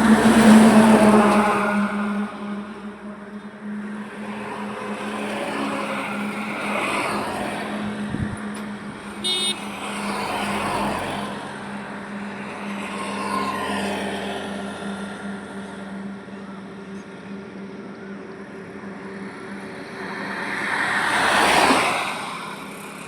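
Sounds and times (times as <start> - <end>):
highway traffic passing: 0.0 - 23.0
car horn beep: 9.2 - 9.9.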